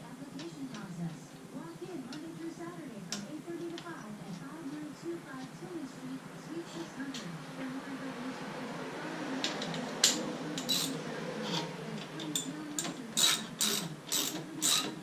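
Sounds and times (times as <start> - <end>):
ratchet wrench clicking: 9.4 - 11.0, 12.2 - 15.0.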